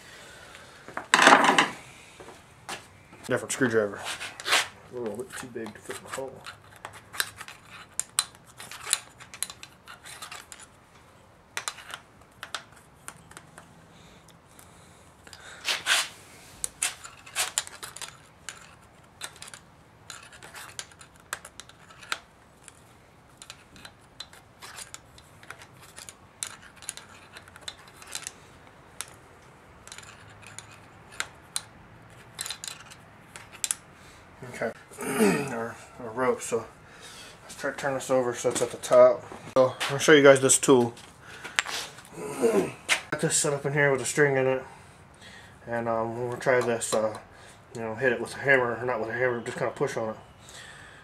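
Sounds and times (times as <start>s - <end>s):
screwdriver clicking and scraping metal: 4.2s - 10.8s, 11.6s - 13.7s, 14.6s - 33.9s.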